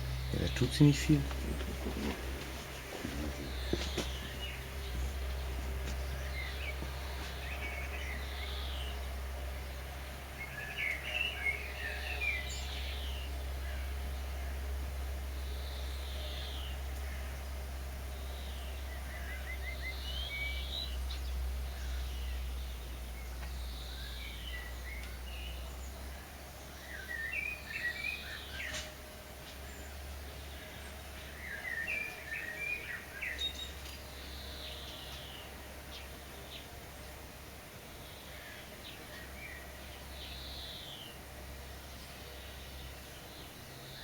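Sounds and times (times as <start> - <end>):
steady low rumble: 0.0 - 8.2
songbirds singing: 0.0 - 44.0.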